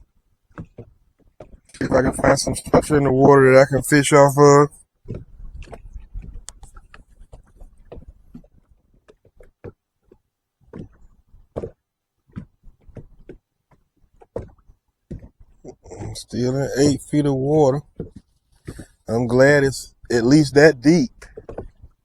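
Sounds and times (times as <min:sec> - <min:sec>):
light knocks and clicks on boat: 0:00.0 - 0:22.0
wind rumble on microphone: 0:05.0 - 0:08.7.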